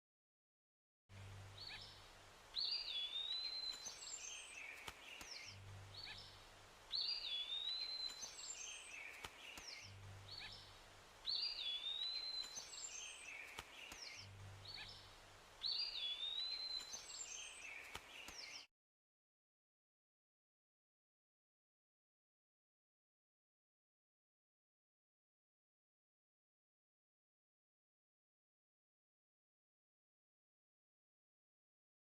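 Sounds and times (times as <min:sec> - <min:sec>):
low hum: 0:01.1 - 0:02.6, 0:05.4 - 0:06.9, 0:09.8 - 0:11.3, 0:14.0 - 0:15.6
bird calls: 0:01.6 - 0:18.7.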